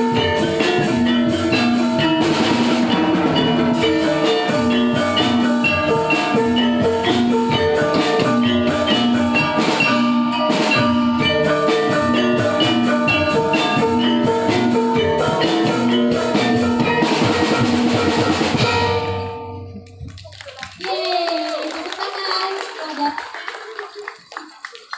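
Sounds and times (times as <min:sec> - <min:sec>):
metallophones ringing a melody: 0:00.0 - 0:20.0
steady drum rhythm: 0:00.0 - 0:20.8.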